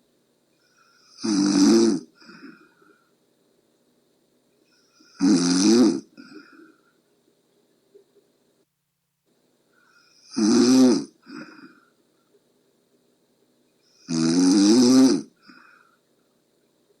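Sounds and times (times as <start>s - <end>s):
person snoring: 0.7s - 2.7s, 5.0s - 6.7s, 10.0s - 11.8s, 13.9s - 15.8s
soft breath: 2.2s - 3.2s, 9.6s - 10.2s, 11.2s - 12.5s, 15.4s - 16.4s.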